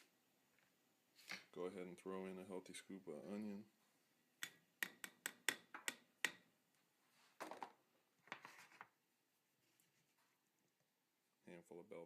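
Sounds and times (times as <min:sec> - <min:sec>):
utensil tapping on skillet: 0:04.4 - 0:06.4.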